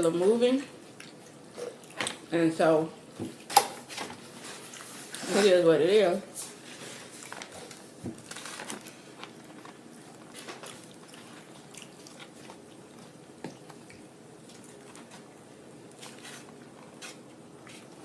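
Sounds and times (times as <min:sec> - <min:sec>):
biting and chewing food: 0:06.9 - 0:18.0
small clicks and crunches: 0:07.2 - 0:12.6.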